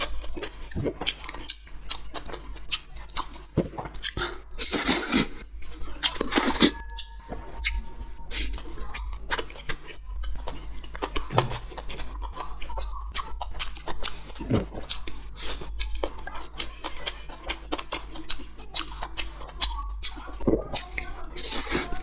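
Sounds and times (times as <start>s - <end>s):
chewing with wet mouth clicks: 0.0s - 22.0s
steady low hum: 0.0s - 22.0s.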